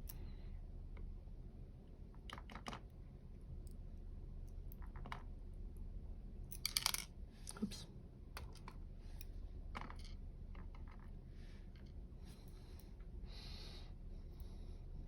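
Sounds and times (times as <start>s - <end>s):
clicks of small metal lock parts: 6.5s - 7.1s.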